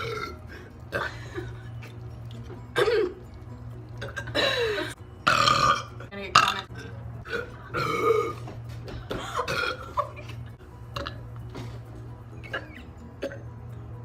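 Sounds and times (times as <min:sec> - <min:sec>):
girls burping: 0:04.0 - 0:08.4, 0:09.1 - 0:10.4.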